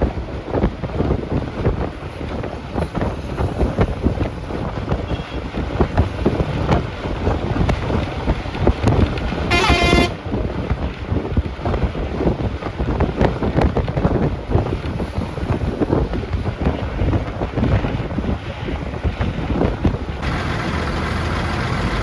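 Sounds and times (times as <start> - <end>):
bus engine and road rumble: 0.0 - 22.0
wind buffeting microphone: 0.0 - 22.0
short horn toot: 9.5 - 10.2.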